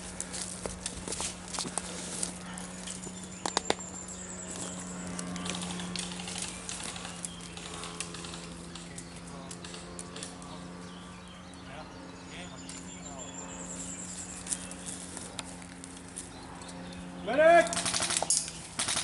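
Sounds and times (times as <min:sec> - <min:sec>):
footsteps through dry leaves: 0:00.0 - 0:03.4, 0:13.6 - 0:17.2
steady low hum: 0:00.0 - 0:19.0
sharp cracks: 0:17.6 - 0:19.0.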